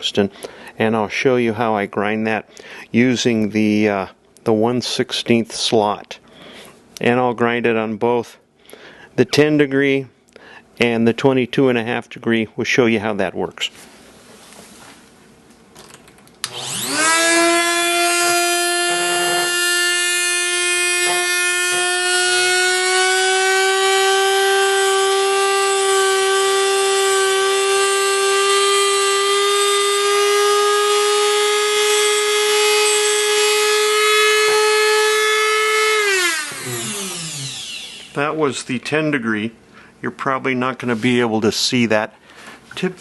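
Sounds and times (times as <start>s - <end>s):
grinder motor whining: 16.4s - 38.2s.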